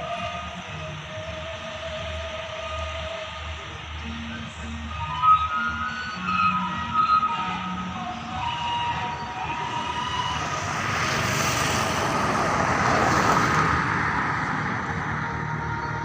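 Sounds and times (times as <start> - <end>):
bus running past: 0.0 - 16.0
multi-tone bus horn: 0.0 - 16.0.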